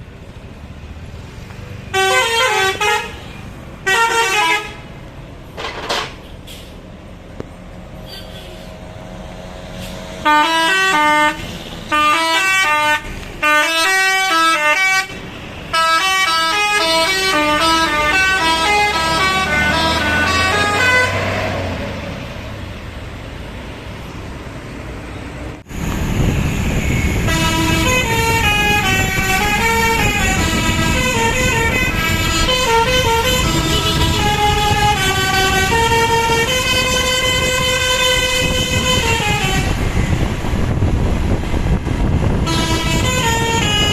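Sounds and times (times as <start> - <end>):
bus engine low noise: 0.0 - 43.9
multi-tone air horn melody: 1.9 - 4.8, 10.2 - 21.2, 26.9 - 40.0, 42.4 - 43.9.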